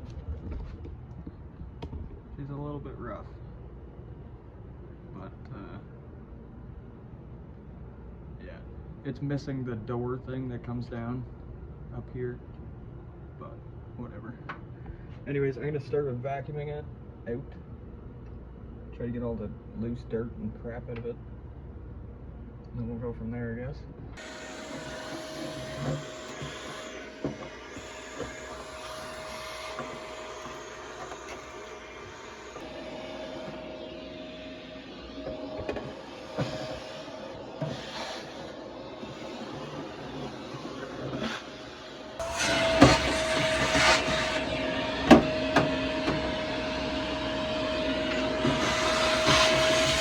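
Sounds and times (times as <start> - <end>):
vacuum cleaner whining: 24.2 - 50.0.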